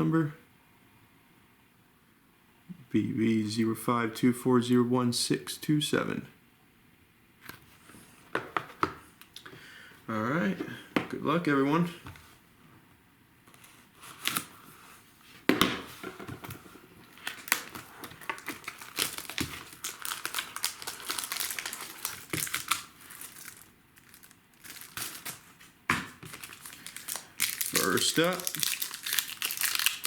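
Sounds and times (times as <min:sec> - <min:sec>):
plastic wrapping crinkling and tearing: 0:17.0 - 0:30.0.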